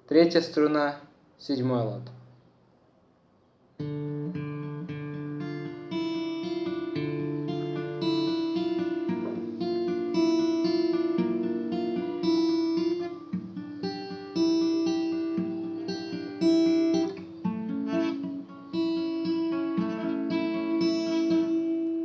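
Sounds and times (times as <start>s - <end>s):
fingerstyle acoustic guitar: 3.8s - 22.0s.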